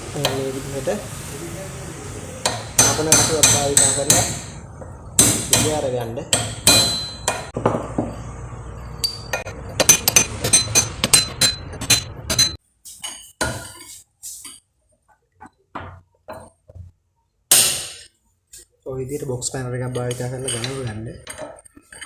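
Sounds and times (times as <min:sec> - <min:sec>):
hammer striking steel tool: 0:02.4 - 0:04.6, 0:05.2 - 0:08.1, 0:09.0 - 0:12.6.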